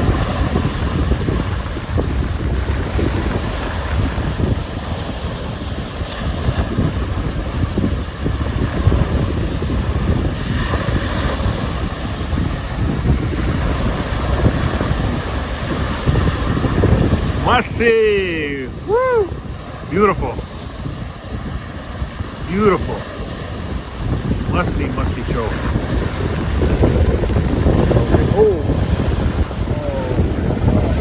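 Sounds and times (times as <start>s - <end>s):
waves washing onto shore: 0.0s - 31.0s
wind buffeting microphone: 0.0s - 31.0s.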